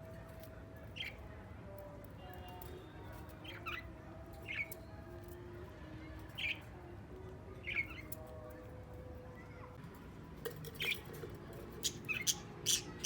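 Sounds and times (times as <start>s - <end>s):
parrot calling: 11.8s - 13.0s.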